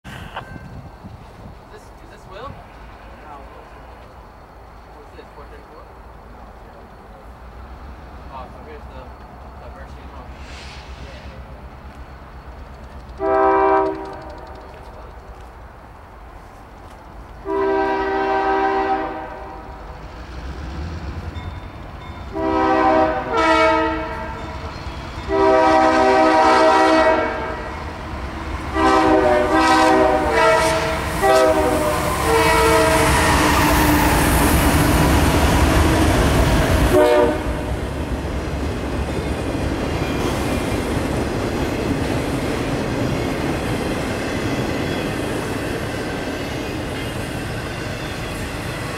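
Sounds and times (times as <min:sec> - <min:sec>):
train passing rumble: 0:00.0 - 0:48.9
locomotive air horns: 0:13.2 - 0:14.6, 0:17.4 - 0:19.8, 0:22.3 - 0:27.8, 0:28.7 - 0:33.8, 0:36.9 - 0:37.7.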